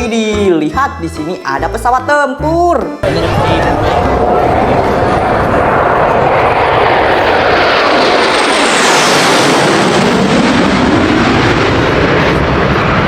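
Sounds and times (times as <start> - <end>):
jet aircraft flying past: 3.0 - 13.0.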